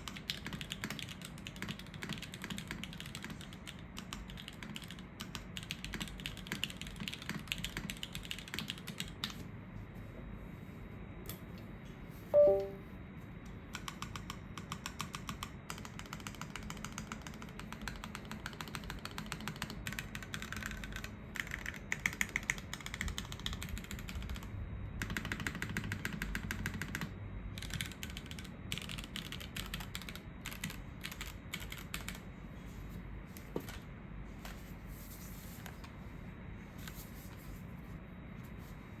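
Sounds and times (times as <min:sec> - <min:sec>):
mechanical keyboard typing: 0:00.0 - 0:09.4, 0:13.7 - 0:32.3
brief loud ringing tone: 0:12.4 - 0:12.9.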